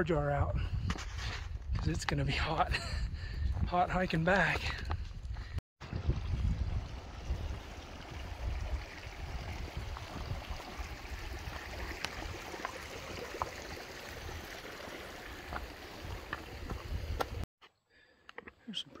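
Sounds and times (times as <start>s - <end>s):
wind rumble on microphone: 0.0s - 12.4s, 15.5s - 17.4s
water running and gurgling: 5.8s - 17.5s
light ticks and drips: 6.9s - 17.4s.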